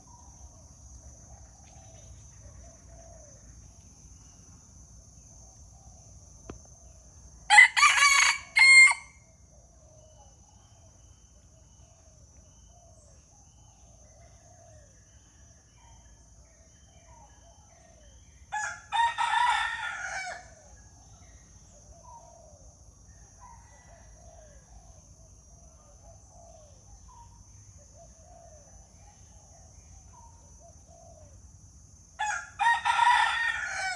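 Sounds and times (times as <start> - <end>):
rooster crowing: 7.5 - 9.2, 18.5 - 20.6, 32.2 - 33.9.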